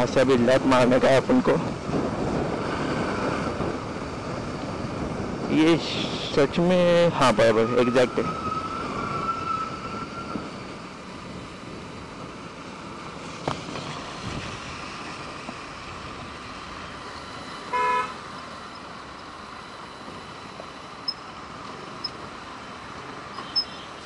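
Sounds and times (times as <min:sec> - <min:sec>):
road traffic noise: 0:00.0 - 0:24.0
vehicle horn honking: 0:17.7 - 0:18.2.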